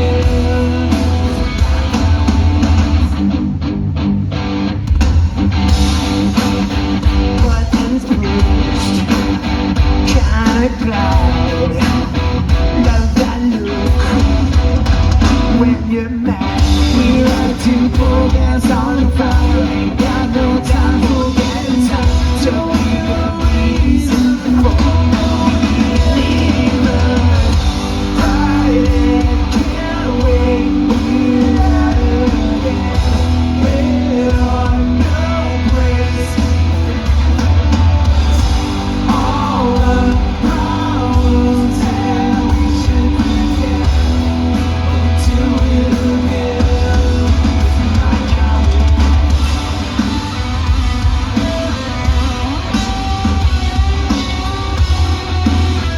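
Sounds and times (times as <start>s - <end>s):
drums: 0.0s - 55.9s
electric guitars: 0.0s - 55.9s
heavy bass: 0.0s - 55.9s
person singing: 15.4s - 37.1s, 38.3s - 44.2s, 44.9s - 49.3s.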